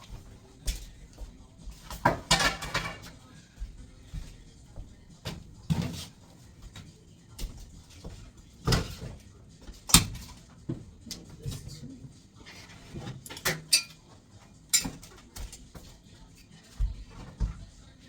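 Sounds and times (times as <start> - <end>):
knocks and thumps of objects handled: 0.0 - 11.8, 14.7 - 16.1.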